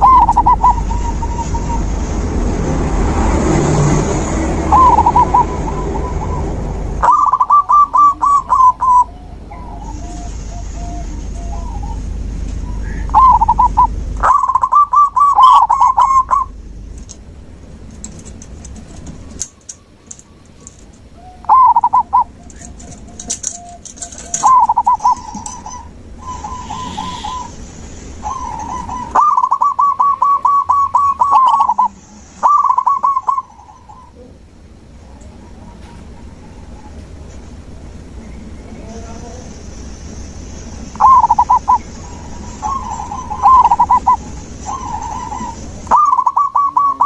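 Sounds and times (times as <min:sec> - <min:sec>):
high bird chirps: 0:00.0 - 0:02.1, 0:04.4 - 0:16.6, 0:19.2 - 0:34.3, 0:39.8 - 0:47.0
dove cooing: 0:00.0 - 0:02.2, 0:04.2 - 0:16.6, 0:18.0 - 0:27.6, 0:28.2 - 0:34.4, 0:35.0 - 0:37.1, 0:41.0 - 0:47.0.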